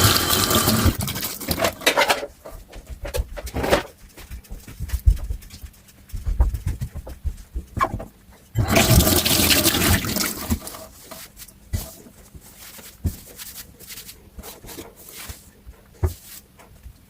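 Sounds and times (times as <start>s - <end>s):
tap water running into sink: 0.0s - 1.7s, 8.6s - 10.8s.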